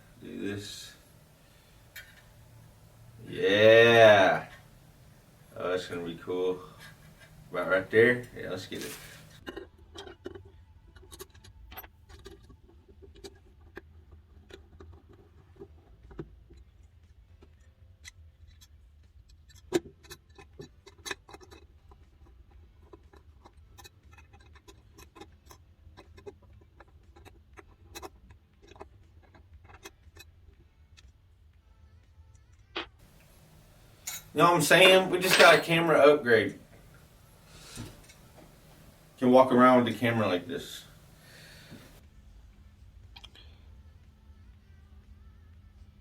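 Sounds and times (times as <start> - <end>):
small parts clicking and tapping: 1.0 - 3.4, 32.0 - 39.3.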